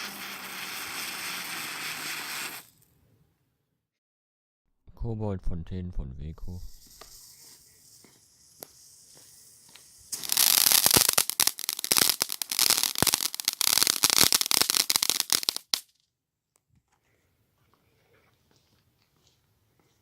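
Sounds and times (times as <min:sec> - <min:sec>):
firework fountain hissing and crackling: 0:00.0 - 0:02.8, 0:06.7 - 0:15.8.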